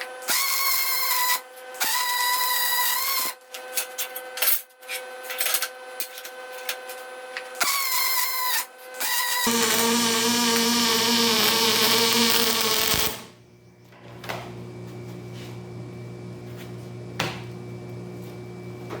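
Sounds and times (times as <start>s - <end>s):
power tool whining: 9.0s - 13.4s.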